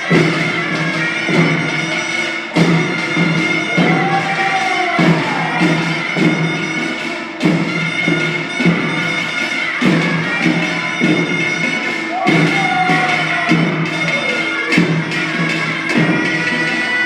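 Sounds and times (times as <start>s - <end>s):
folk drums beating: 0.0s - 17.0s
shrill wind instrument tone: 0.0s - 17.0s.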